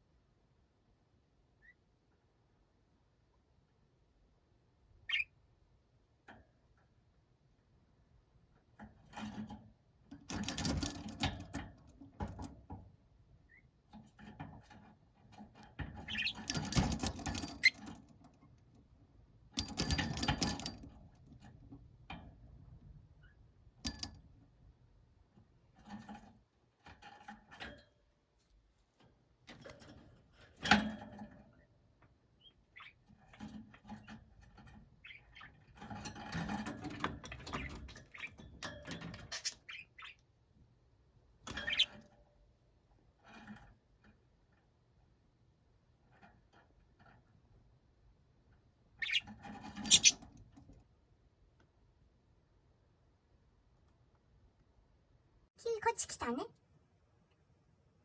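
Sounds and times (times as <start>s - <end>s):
budgerigars rustling and scratching: 13.4s - 18.8s, 25.3s - 45.2s, 45.8s - 51.0s.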